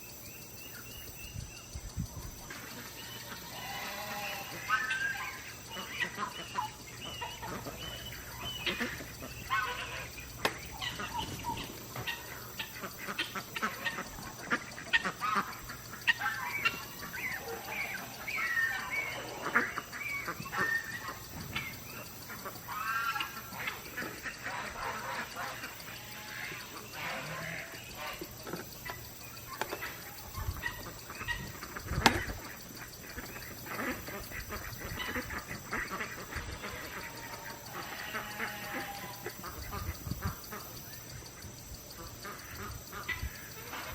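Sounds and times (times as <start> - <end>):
sharp clicks: 0.0 - 43.9
poultry honking and squawking: 2.4 - 43.9.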